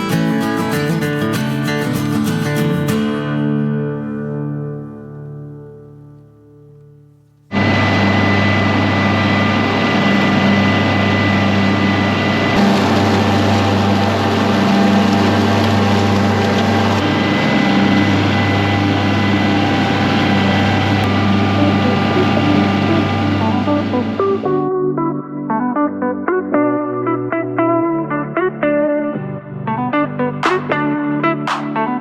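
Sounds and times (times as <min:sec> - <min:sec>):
tractor diesel engine running: 0:07.5 - 0:24.4
thin high whine: 0:07.5 - 0:24.6.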